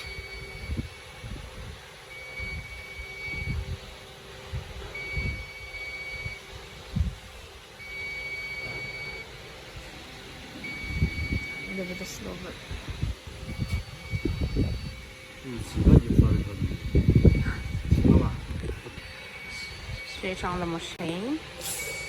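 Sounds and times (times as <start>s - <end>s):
electronic buzzer beeping: 0.0s - 1.2s, 2.0s - 6.7s, 7.8s - 22.0s
steady hum: 0.0s - 22.0s.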